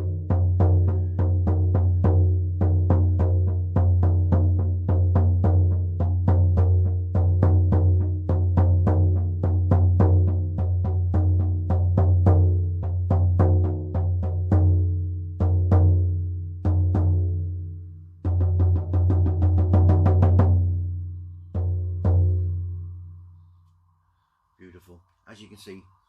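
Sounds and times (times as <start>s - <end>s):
frame drum booming strokes: 18.2s - 23.1s.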